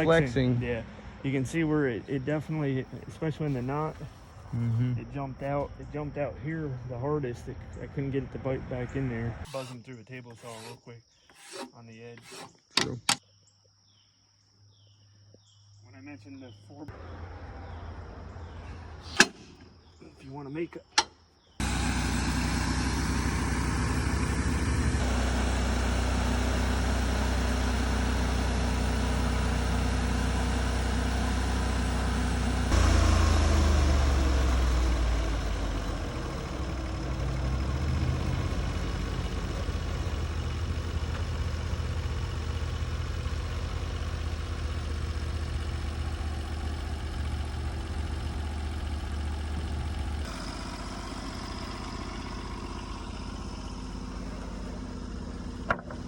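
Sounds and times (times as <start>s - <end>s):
sawmill engine running: 0.0s - 4.2s, 8.4s - 12.5s, 21.6s - 56.0s.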